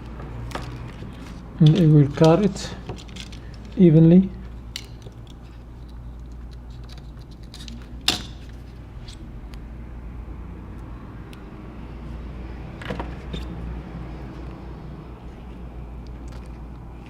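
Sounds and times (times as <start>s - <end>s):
steady low hum: 0.0s - 17.0s
hand tools clicking and rustling: 0.4s - 3.8s
adhesive tape rustling: 4.4s - 9.2s.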